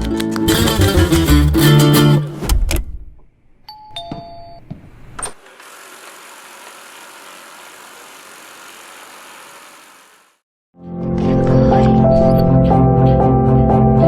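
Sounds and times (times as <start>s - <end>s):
robot vacuum whirring: 5.4s - 10.4s.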